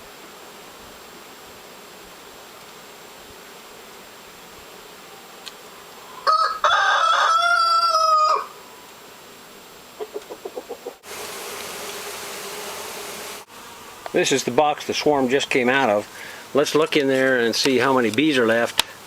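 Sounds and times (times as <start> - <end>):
rooster crowing: 6.2 - 8.6
chicken clucking: 10.0 - 11.0.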